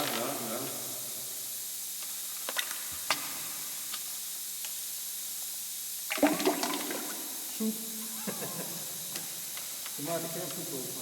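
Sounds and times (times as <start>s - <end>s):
background hiss: 0.0s - 11.0s.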